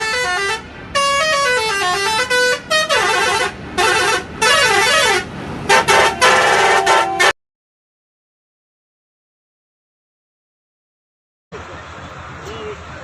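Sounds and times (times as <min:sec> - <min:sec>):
electronic musical vehicle horn: 0:00.0 - 0:07.4.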